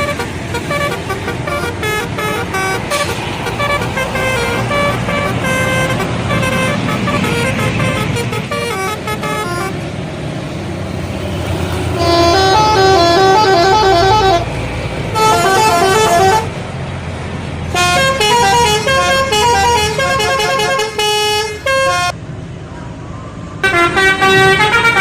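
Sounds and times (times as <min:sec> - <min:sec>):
bus horn playing musical notes: 0:00.0 - 0:09.8, 0:11.6 - 0:16.6, 0:17.7 - 0:22.2, 0:23.6 - 0:25.0
bus engine running: 0:00.0 - 0:25.0.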